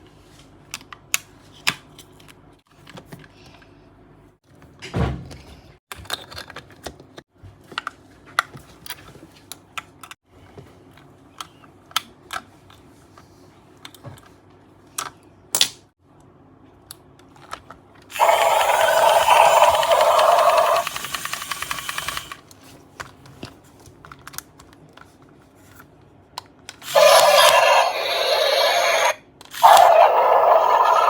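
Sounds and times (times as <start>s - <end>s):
plastic packaging clicks and rattles: 23.0s - 25.2s.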